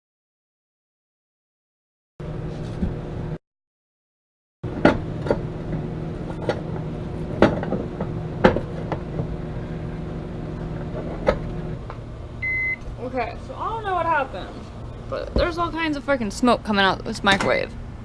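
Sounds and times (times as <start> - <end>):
microwave oven humming: 2.2 - 3.4, 4.6 - 18.0.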